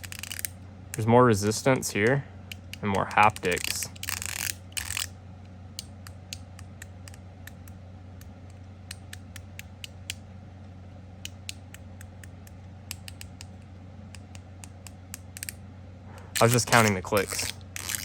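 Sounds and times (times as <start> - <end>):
fidget slider clicks: 0.0 - 0.5, 2.5 - 5.1, 14.2 - 15.6, 16.3 - 18.0.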